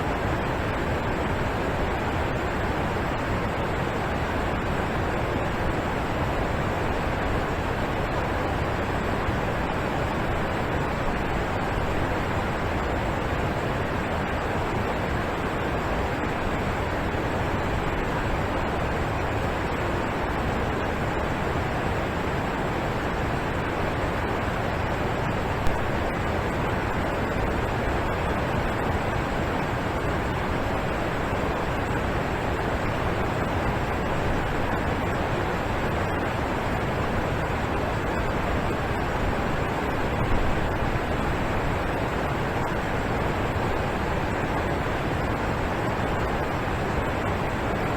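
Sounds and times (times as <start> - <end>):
waterfall roaring: 0.0 - 47.9.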